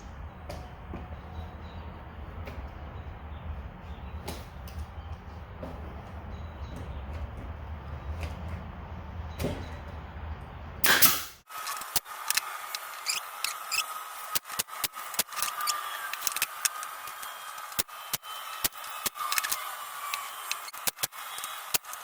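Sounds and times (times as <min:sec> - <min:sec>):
steady low hum: 0:00.0 - 0:11.4
loud burst: 0:10.8 - 0:11.4.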